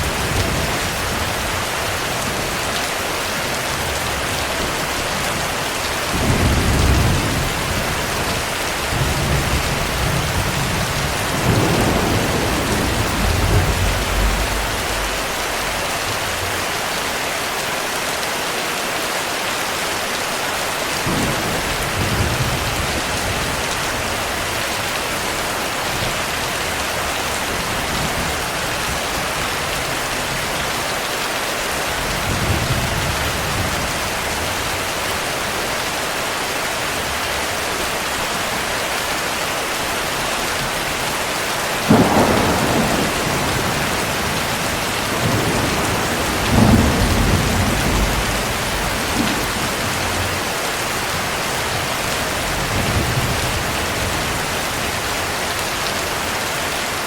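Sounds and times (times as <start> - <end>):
heavy rain falling: 0.0 - 57.0
thunder rumbling: 3.7 - 16.7, 41.8 - 55.1.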